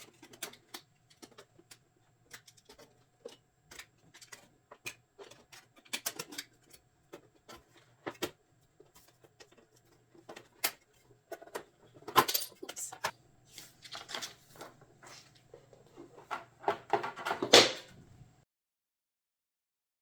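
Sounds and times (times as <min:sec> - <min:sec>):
photo frame and prints handled: 0:00.0 - 0:18.2.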